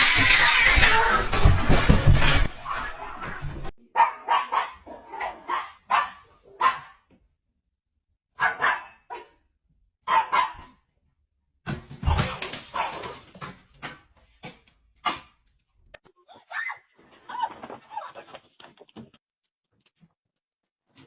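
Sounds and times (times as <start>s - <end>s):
dog barking: 3.9s - 7.1s, 8.4s - 9.4s, 10.0s - 10.8s.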